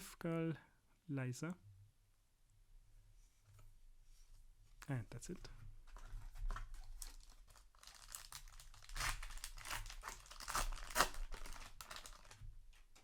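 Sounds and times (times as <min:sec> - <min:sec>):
plastic wrapper crinkling and tearing: 0:06.0 - 0:13.0.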